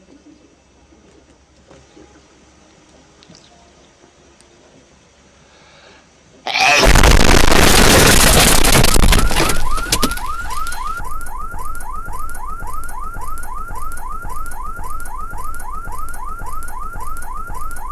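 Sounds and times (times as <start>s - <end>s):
loud blast of noise: 6.5s - 11.0s
car alarm chirping: 8.8s - 17.9s.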